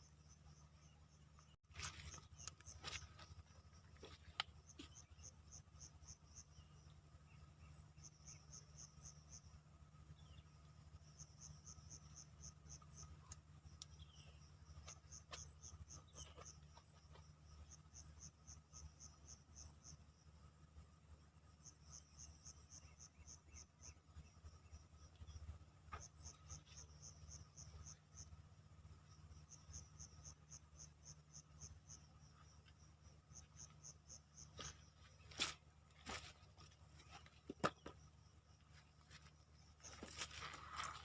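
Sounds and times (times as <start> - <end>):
steady low hum: 0.0 - 41.0
crickets chirping: 10.2 - 41.0.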